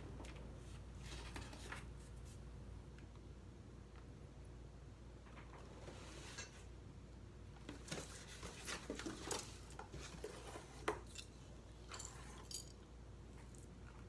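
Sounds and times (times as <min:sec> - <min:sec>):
handling knocks and clinks: 0:07.8 - 0:12.8.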